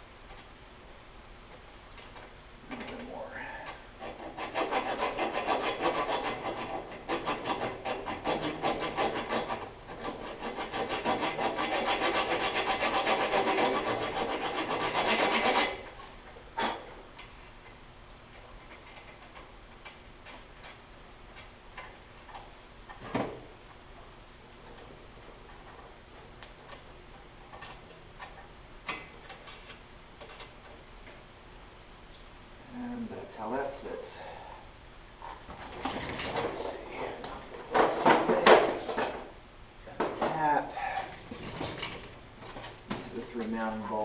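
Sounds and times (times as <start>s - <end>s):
file rasping on metal threads: 4.0s - 15.9s.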